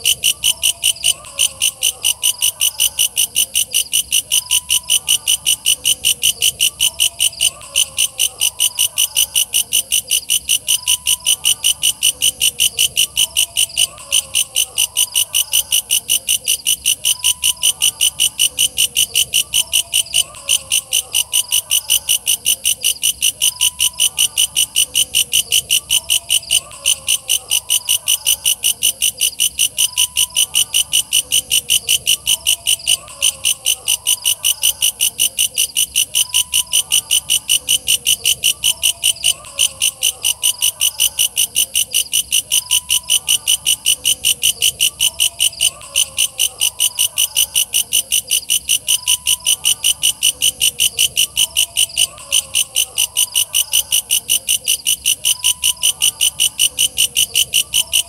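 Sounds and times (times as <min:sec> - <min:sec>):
bush cricket chirping: 0:00.0 - 0:58.0
fainter lower wavering insect calls: 0:00.0 - 0:58.0.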